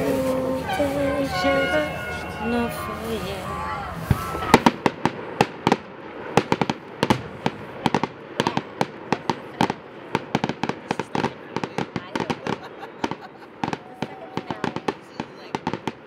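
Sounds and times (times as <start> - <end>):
fireworks cracking and banging: 0.0 - 16.0.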